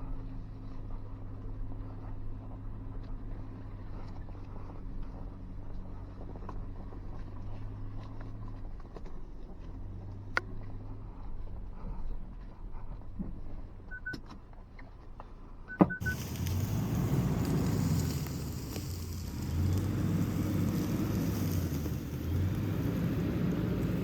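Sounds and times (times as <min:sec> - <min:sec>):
truck engine running low: 0:00.0 - 0:24.0
short high beeps: 0:15.7 - 0:16.2.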